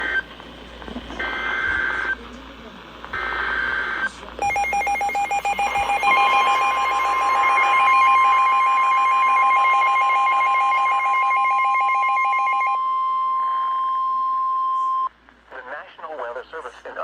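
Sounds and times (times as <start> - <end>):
warbling two-pitch electronic tone: 4.4 - 12.8
steady high tone: 4.4 - 15.1.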